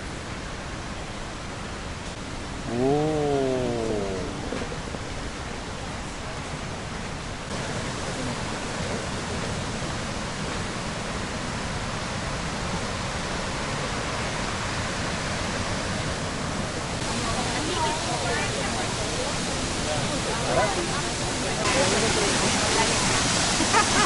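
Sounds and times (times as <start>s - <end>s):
waterfall crashing: 2.4s - 5.9s, 7.5s - 24.0s.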